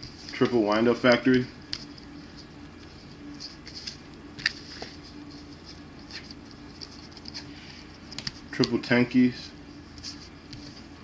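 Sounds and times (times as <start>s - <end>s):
faint low hum: 0.0s - 11.0s
trading cards clicking and rustling: 3.4s - 9.1s.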